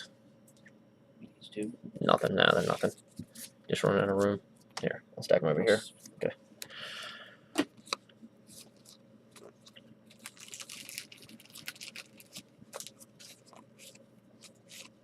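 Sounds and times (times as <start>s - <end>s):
cards and packaging rustling: 7.8s - 15.0s.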